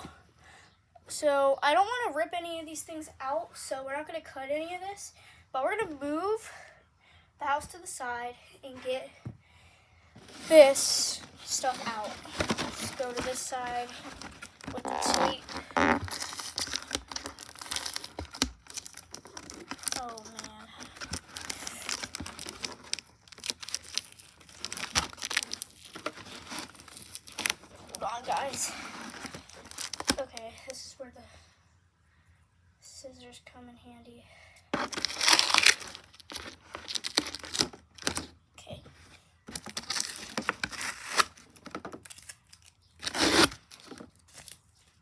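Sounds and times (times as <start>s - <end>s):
tape and cardboard tearing: 10.2s - 30.4s, 34.8s - 38.3s, 39.5s - 44.6s.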